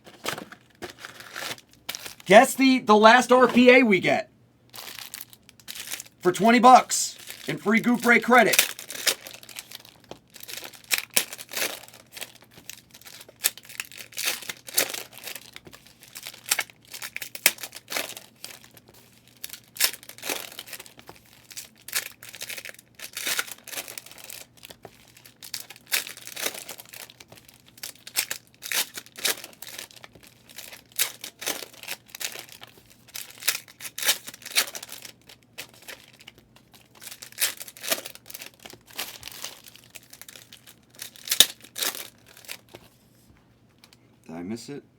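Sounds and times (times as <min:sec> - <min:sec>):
card pack wrappers tearing: 0:00.2 - 0:02.3.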